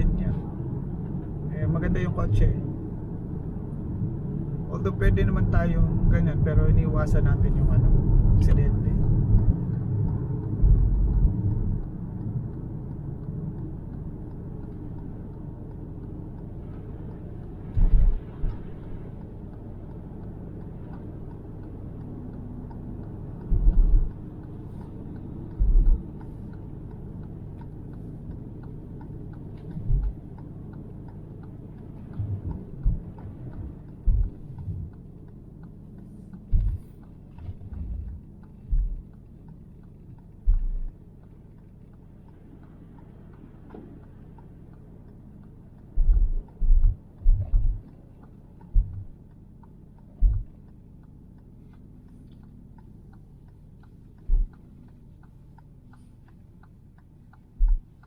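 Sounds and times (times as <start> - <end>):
car engine and tyre rumble: 0.0 - 58.0
low thumps: 10.5 - 11.8, 17.8 - 18.6, 23.4 - 24.1, 25.5 - 26.1, 29.7 - 30.2, 32.1 - 35.0, 36.5 - 39.1, 40.5 - 41.0, 45.9 - 47.9, 48.6 - 49.2, 50.1 - 50.6, 54.3 - 54.6, 57.6 - 57.9.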